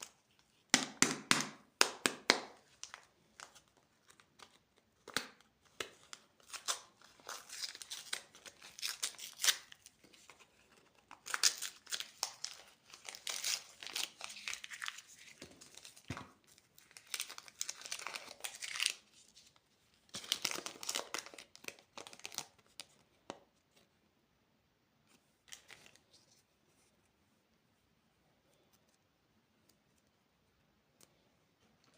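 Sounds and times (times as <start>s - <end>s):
candy wrappers crinkling: 2.2s - 23.0s.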